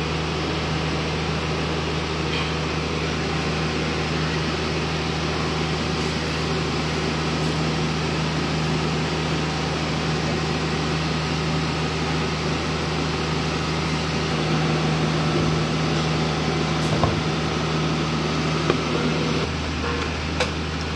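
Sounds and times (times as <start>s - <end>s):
diesel generator droning: 0.0s - 20.9s.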